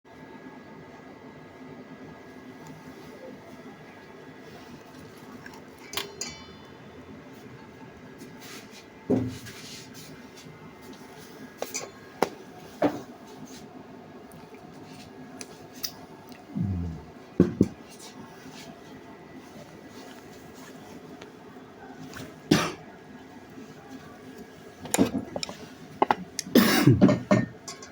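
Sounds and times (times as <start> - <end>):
faint steady hum: 0.1 - 27.9
utensils clinking against dishes: 5.8 - 6.8, 11.6 - 12.1, 24.9 - 27.9.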